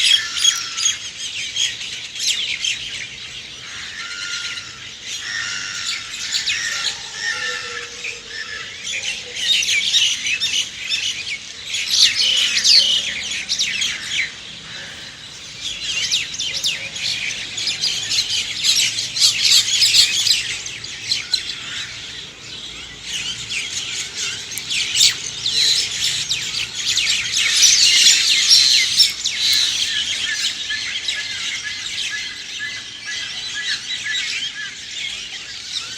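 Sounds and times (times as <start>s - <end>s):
chorus of songbirds chirping: 0.0s - 35.9s.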